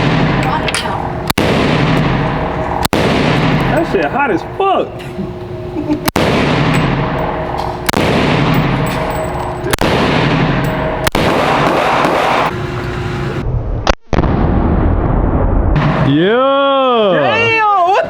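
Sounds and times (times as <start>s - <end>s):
dense sustained din: 0.0s - 17.7s
gunshots cracking: 1.2s - 4.0s, 6.1s - 12.5s.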